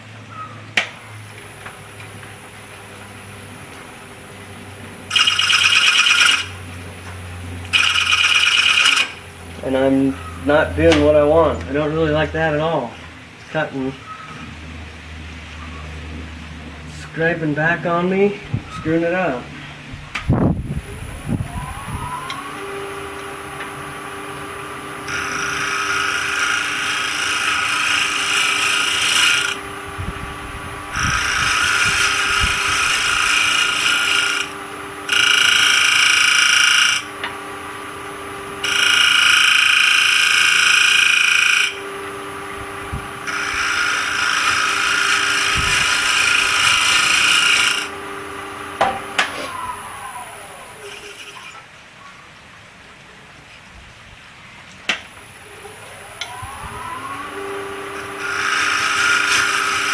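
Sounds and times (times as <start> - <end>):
lathe motor hum and whine: 0.0 - 51.7, 55.1 - 59.9
tool rasping on wood: 5.1 - 6.6, 7.7 - 9.2, 25.1 - 29.6, 30.9 - 37.1, 38.6 - 41.8, 43.2 - 48.0, 57.9 - 59.9.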